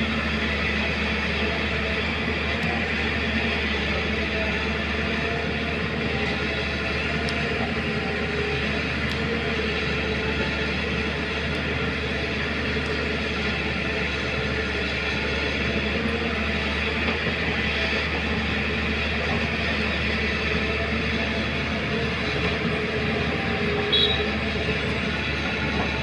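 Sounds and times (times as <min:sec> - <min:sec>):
excavator engine drone: 0:00.0 - 0:26.0.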